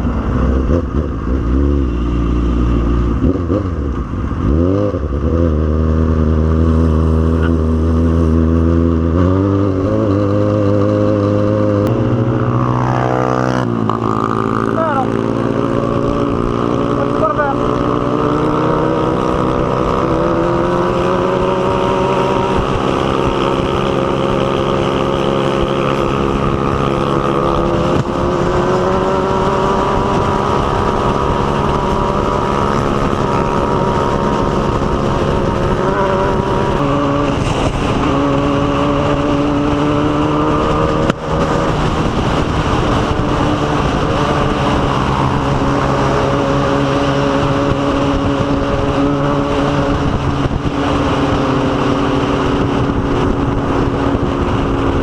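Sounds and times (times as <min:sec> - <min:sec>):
motorcycle engine cruising: 0:00.0 - 0:55.0
wind rushing over microphone: 0:00.0 - 0:55.0.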